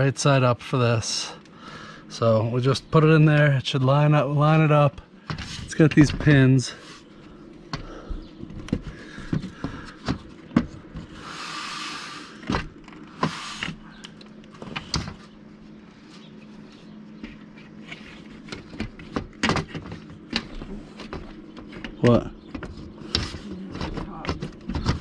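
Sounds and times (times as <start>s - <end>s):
short scraping hiss: 11.2s - 12.4s.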